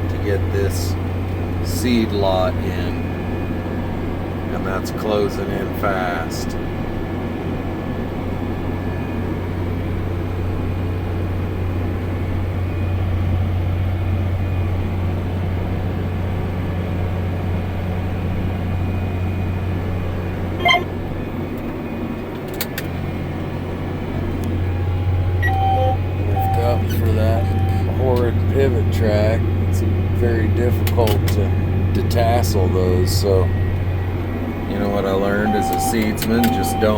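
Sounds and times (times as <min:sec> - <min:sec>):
tractor engine droning: 0:00.0 - 0:07.1, 0:07.7 - 0:36.9
short sharp tone: 0:20.6 - 0:20.9, 0:25.4 - 0:26.8.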